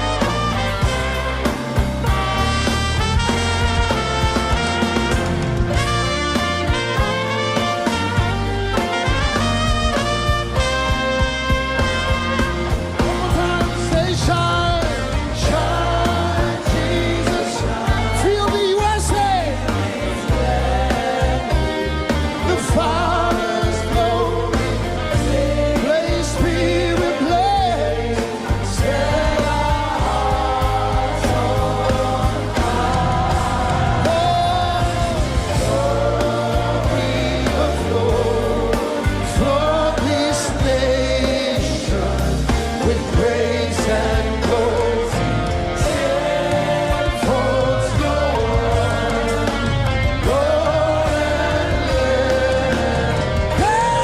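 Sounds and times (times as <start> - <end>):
band playing worship music: 0.0 - 54.0
steady bass line: 0.0 - 54.0
voices singing: 12.6 - 54.0.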